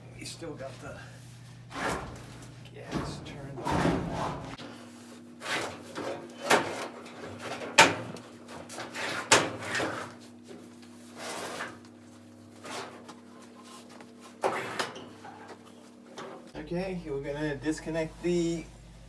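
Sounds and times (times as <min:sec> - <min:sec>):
faint steady hum: 0:00.0 - 0:04.8, 0:16.6 - 0:19.0.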